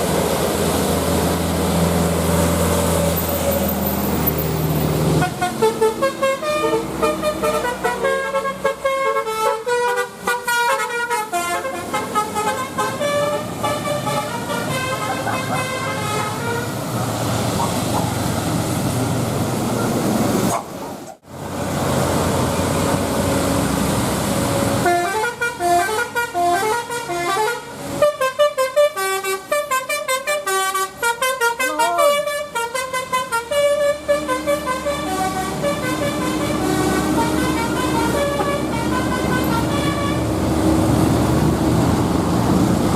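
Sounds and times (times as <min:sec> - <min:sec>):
bus running and traffic noise: 0:00.0 - 0:42.9
melodic bus horn tune: 0:05.1 - 0:16.9, 0:24.7 - 0:40.5.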